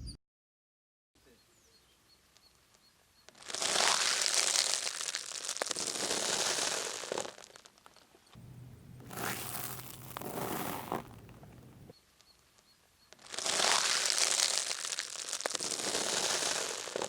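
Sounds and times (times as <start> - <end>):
objects crunching under car tyre: 8.4 - 11.9, 13.2 - 17.0.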